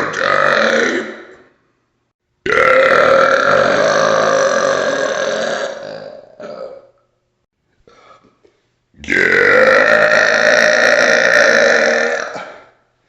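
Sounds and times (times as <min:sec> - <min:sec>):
loud burps: 0:00.0 - 0:01.6, 0:02.4 - 0:07.0, 0:09.0 - 0:12.8.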